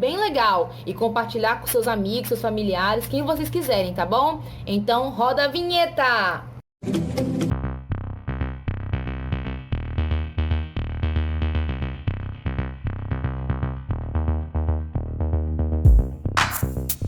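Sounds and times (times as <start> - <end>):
deep bass hit: 7.5 - 14.2, 15.8 - 17.0.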